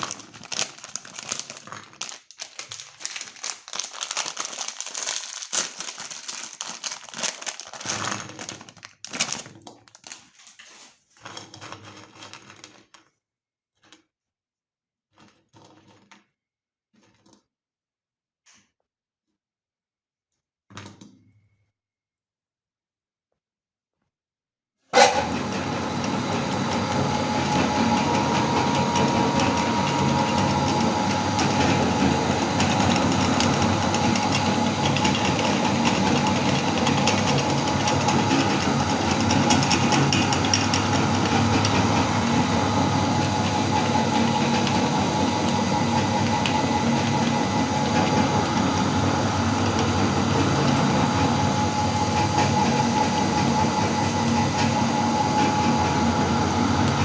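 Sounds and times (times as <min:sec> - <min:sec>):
candy crackling in grinder: 0:00.0 - 0:14.2, 0:15.0 - 0:17.6, 0:25.0 - 0:57.0
electric meat grinder motor whine: 0:25.0 - 0:57.0.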